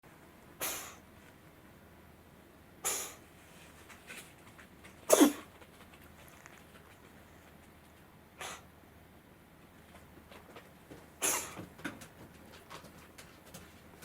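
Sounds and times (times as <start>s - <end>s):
cat coughing: 5.1s - 5.5s, 11.2s - 11.6s.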